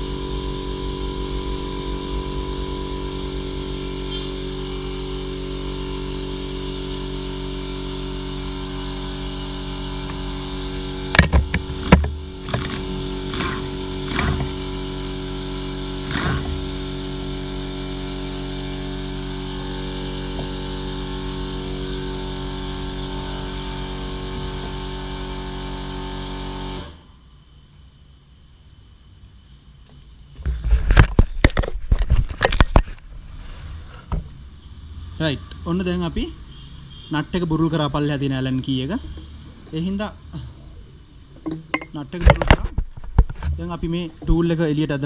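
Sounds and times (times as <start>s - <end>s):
impact wrench hammering: 11.1s - 14.8s, 16.0s - 16.8s, 41.4s - 44.4s.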